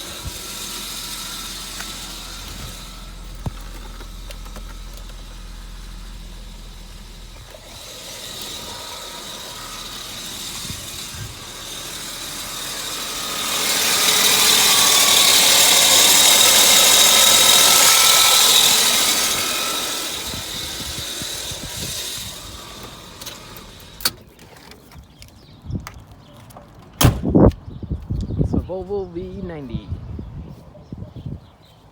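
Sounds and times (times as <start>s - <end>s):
high-pitched engine screech: 0.0s - 24.1s
car engine running: 0.0s - 24.2s.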